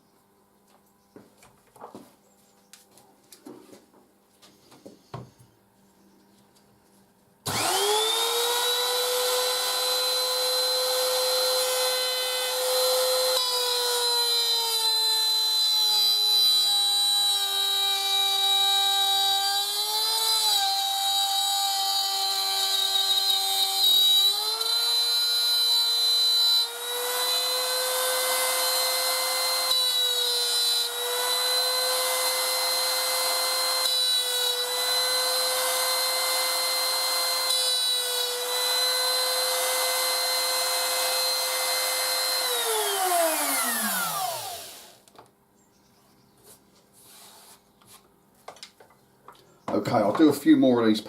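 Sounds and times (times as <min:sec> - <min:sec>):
router motor whine cutting wood: 0:07.4 - 0:45.1.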